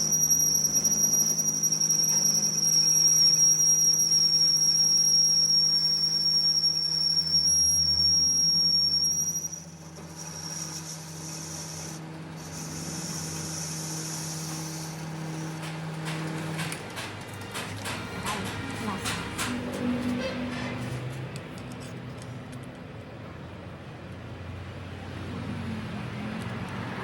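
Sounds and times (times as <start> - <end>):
machine high-pitched squeal: 0.0 - 16.8.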